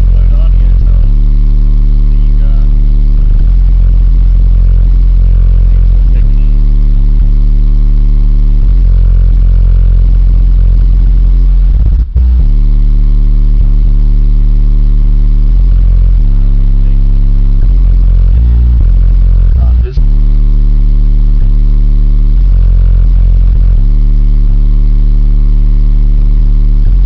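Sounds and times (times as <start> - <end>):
loud bass-heavy music: 0.0 - 27.0.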